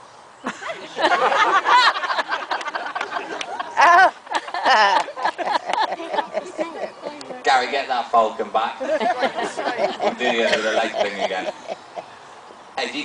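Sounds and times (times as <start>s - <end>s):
audience laughing: 0.5s - 7.4s, 8.8s - 12.1s
high voices exclaiming: 3.1s - 7.6s.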